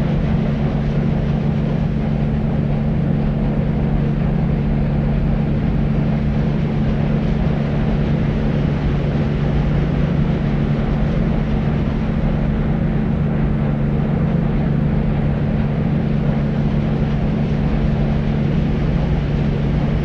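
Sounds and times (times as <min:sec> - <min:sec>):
deep white noise: 0:00.0 - 0:20.0.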